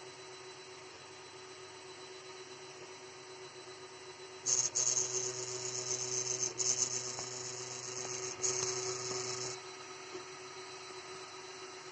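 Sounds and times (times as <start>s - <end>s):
printer steady hum: 4.4s - 10.2s
high hissing whir: 4.5s - 9.6s.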